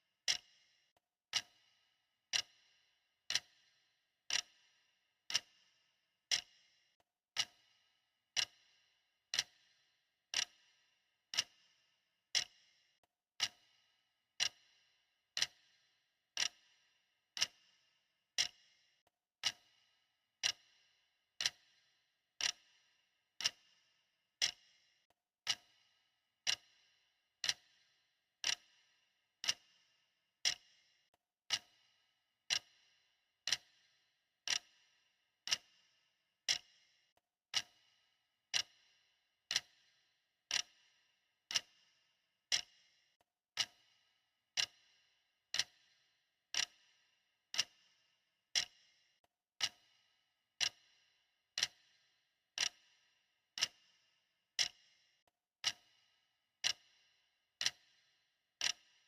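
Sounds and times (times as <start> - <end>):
clock ticking: 0.3 - 0.5, 1.3 - 1.6, 2.3 - 2.6, 3.3 - 3.6, 4.3 - 4.6, 5.3 - 5.5, 6.3 - 6.5, 7.4 - 7.6, 8.3 - 8.6, 9.3 - 9.6, 10.3 - 10.6, 11.3 - 11.6, 12.4 - 12.6, 13.4 - 13.6, 14.4 - 14.6, 15.4 - 15.6, 16.4 - 16.6, 17.4 - 17.6, 18.4 - 18.6, 19.4 - 19.7, 20.4 - 20.7, 21.4 - 21.7, 22.4 - 22.7, 23.4 - 23.7, 24.4 - 24.6, 25.4 - 25.8, 26.4 - 26.7, 27.4 - 27.8, 28.4 - 28.7, 29.4 - 29.7, 30.4 - 30.7, 31.5 - 31.8, 32.5 - 32.8, 33.5 - 33.8, 34.5 - 34.7, 35.5 - 35.7, 36.5 - 36.7, 37.5 - 37.8, 38.5 - 38.8, 39.5 - 39.8, 40.5 - 40.8, 41.5 - 41.7, 42.5 - 42.7, 43.6 - 43.8, 44.6 - 44.8, 45.5 - 45.8, 46.6 - 46.8, 47.5 - 47.8, 48.6 - 48.8, 49.6 - 49.9, 50.6 - 50.8, 51.6 - 51.8, 52.6 - 52.8, 53.6 - 53.8, 54.6 - 54.8, 55.6 - 55.9, 56.6 - 56.9, 57.6 - 57.9, 58.6 - 58.8.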